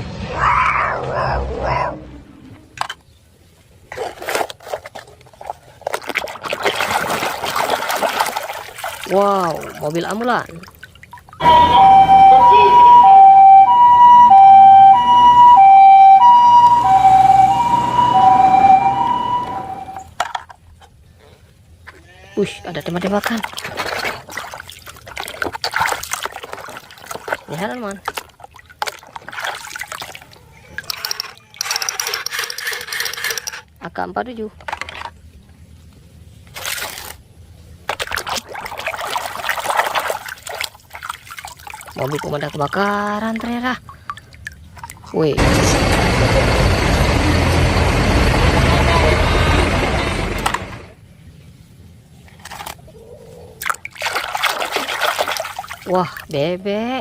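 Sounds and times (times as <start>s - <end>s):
water splashing over plastic toy: 3.9s - 12.1s, 22.9s - 33.6s, 37.8s - 45.4s, 53.6s - 56.5s
toy two-tone siren wailing: 11.4s - 20.1s.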